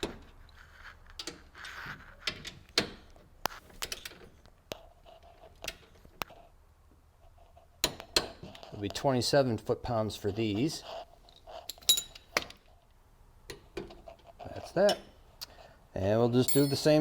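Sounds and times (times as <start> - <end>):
metallic clicks and knocks: 16.5 - 17.0.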